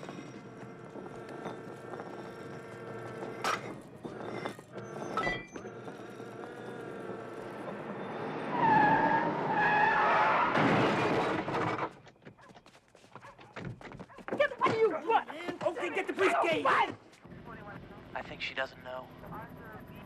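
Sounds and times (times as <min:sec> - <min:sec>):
car engine running: 0:00.0 - 0:08.5
loud squeal with rush of noise: 0:04.0 - 0:11.9.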